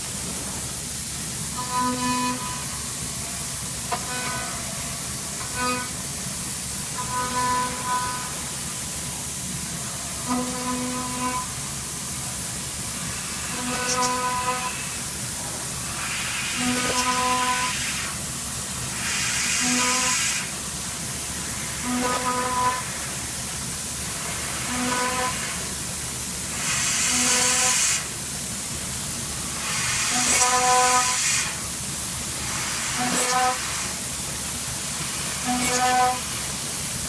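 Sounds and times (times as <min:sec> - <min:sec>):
milling machine hissing: 0:00.0 - 0:37.0.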